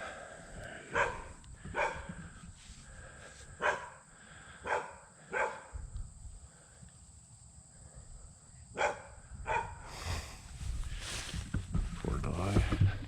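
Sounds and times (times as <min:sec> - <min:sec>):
dog barking and yelping: 0:00.9 - 0:02.1, 0:03.6 - 0:04.0, 0:04.6 - 0:05.7, 0:08.8 - 0:09.8.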